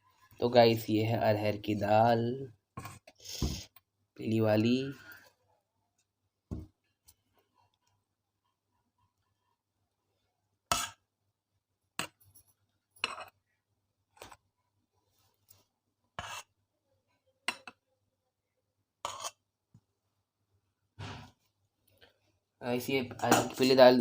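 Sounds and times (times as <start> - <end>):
spoon scraping and clinking dish: 12.1 - 13.4, 19.1 - 19.4.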